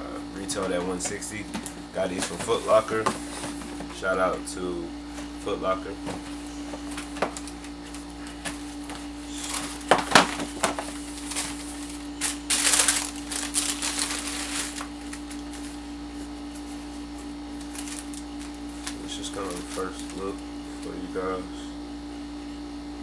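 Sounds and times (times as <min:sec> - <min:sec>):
steady low hum: 0:00.0 - 0:23.0
paper and cardboard rustling: 0:00.3 - 0:04.4, 0:05.1 - 0:21.1.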